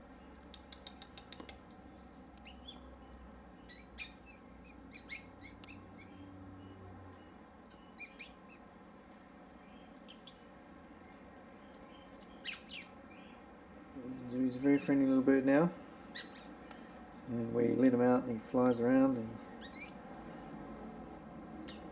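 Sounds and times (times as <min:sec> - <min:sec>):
parrot chirping: 0:02.4 - 0:03.0, 0:03.6 - 0:06.2, 0:07.6 - 0:08.7, 0:09.6 - 0:10.5, 0:11.9 - 0:13.4, 0:14.6 - 0:15.0, 0:16.0 - 0:16.6, 0:17.7 - 0:18.5, 0:19.5 - 0:20.2, 0:21.6 - 0:21.9.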